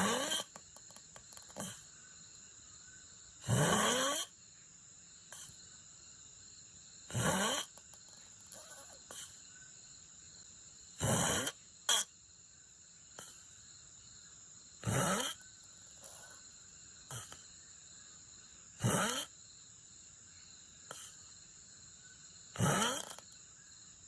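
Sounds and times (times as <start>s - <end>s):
person snoring: 7.1s - 7.7s, 11.0s - 11.6s, 18.8s - 19.3s, 22.6s - 23.2s.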